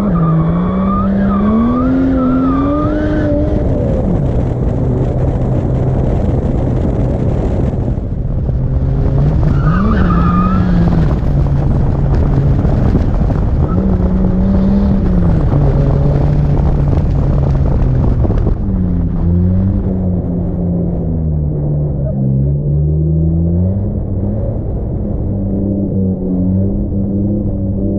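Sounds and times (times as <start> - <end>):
tire squeal: 0.0 - 3.4, 9.3 - 11.6
car engine revving: 0.0 - 27.9.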